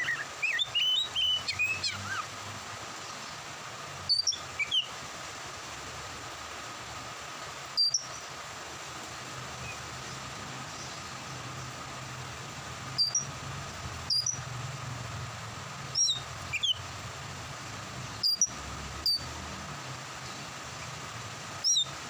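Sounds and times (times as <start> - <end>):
bird whistling and chirping: 0.0 - 2.3, 4.1 - 4.9, 7.8 - 8.2, 13.0 - 13.3, 14.1 - 14.4, 15.9 - 16.8, 18.2 - 19.2, 21.6 - 21.9
steady background hiss: 0.0 - 22.0.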